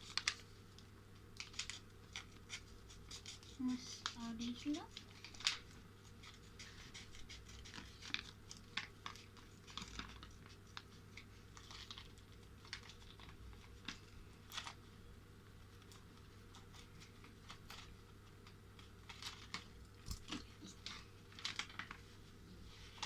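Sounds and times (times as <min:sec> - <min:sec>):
plastic bag crinkling: 0:18.8 - 0:22.2.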